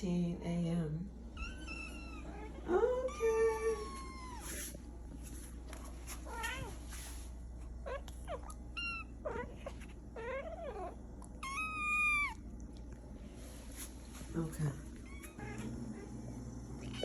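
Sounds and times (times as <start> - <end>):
cats meowing: 1.4 - 4.7, 6.1 - 6.8, 7.8 - 12.6, 15.0 - 16.1, 16.8 - 17.0.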